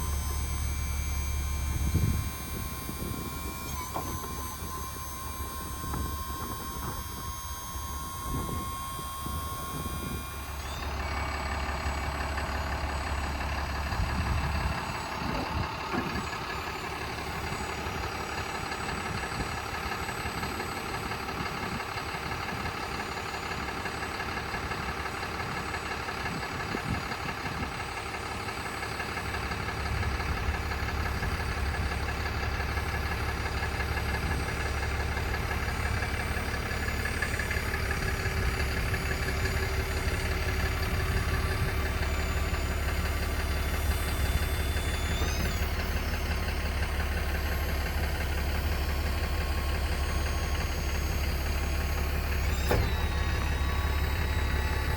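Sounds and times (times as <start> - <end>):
crane pump motor whining: 0.0 - 54.9.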